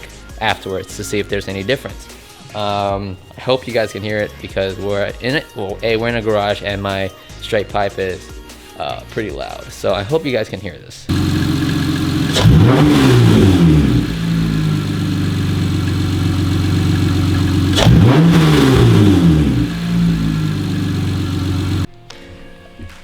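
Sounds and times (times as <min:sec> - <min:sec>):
car engine idling and revving: 0:11.1 - 0:21.9.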